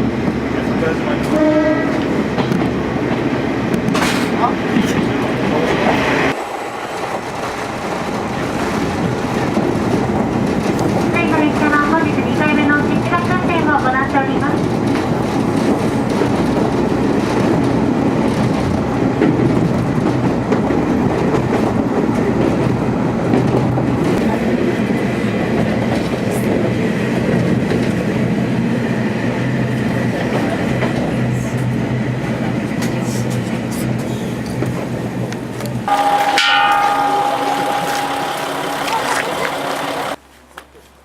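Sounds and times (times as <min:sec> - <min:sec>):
wheels rumbling on rails: 0:00.0 - 0:40.6
diesel engine hum: 0:35.9 - 0:40.3.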